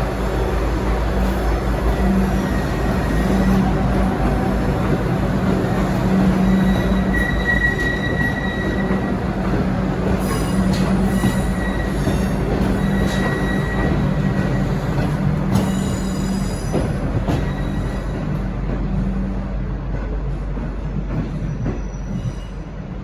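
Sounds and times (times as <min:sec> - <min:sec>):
train rumbling along track: 0:00.0 - 0:23.0
high wheel squeal: 0:01.8 - 0:04.8, 0:05.6 - 0:09.5, 0:10.2 - 0:15.0, 0:15.6 - 0:18.2.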